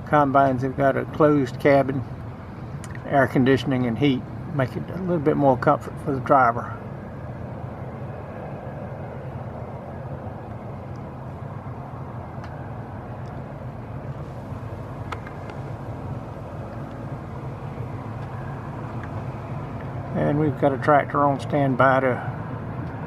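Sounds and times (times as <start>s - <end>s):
combine harvester engine hum: 0.0s - 22.5s
even rushing noise: 14.2s - 21.4s.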